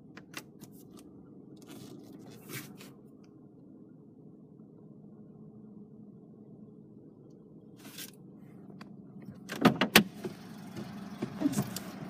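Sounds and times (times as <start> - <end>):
faint steady hum: 0.0 - 12.0
car door clunks: 9.4 - 11.9.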